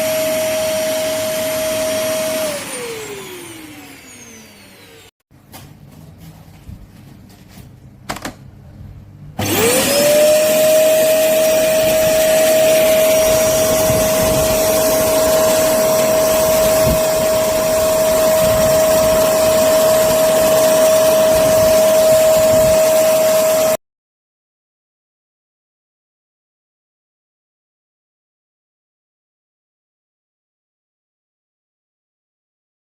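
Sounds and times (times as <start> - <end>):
vacuum cleaner motor whine: 0.0 - 5.1, 9.4 - 23.8.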